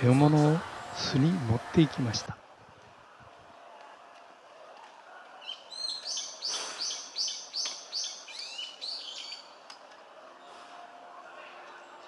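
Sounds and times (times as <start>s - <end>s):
sparrowhawk calling: 5.5s - 9.4s.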